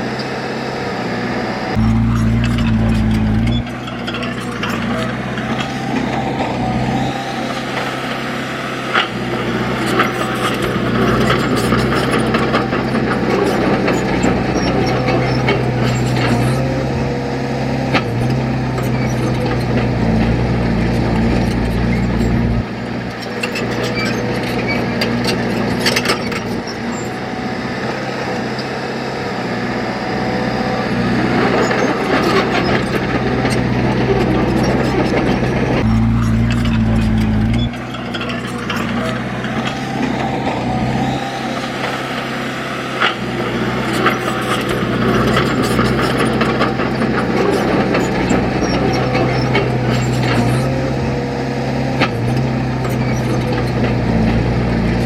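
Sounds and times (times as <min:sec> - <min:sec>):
heavy machinery diesel engine: 0:00.0 - 0:55.0
metallic clanks and rattles: 0:31.5 - 0:40.3.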